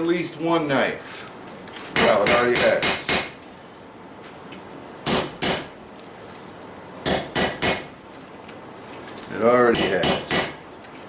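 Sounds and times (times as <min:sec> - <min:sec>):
hammer striking steel on anvil: 0:07.1 - 0:07.8, 0:09.8 - 0:10.6.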